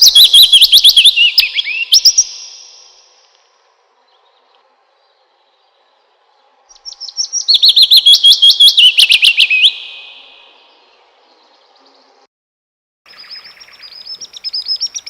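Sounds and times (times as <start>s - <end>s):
songbird singing rapid high notes: 0.0s - 3.2s, 6.7s - 12.2s, 13.1s - 15.0s.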